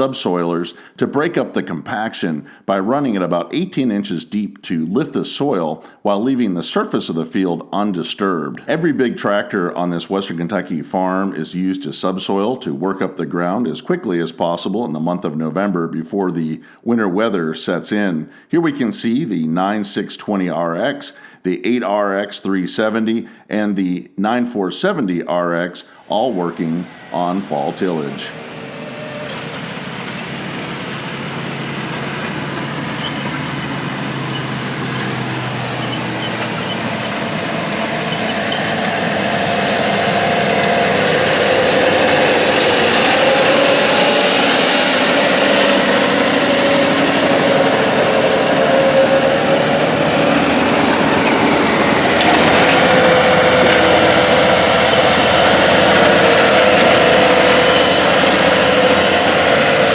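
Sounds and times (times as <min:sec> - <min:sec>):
tractor diesel engine under load: 0:00.0 - 0:03.6, 0:25.8 - 0:59.9.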